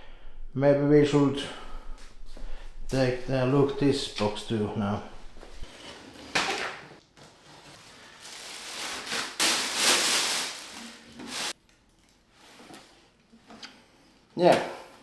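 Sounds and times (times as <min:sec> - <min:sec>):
packaging rustling and scraping: 0:03.0 - 0:13.2.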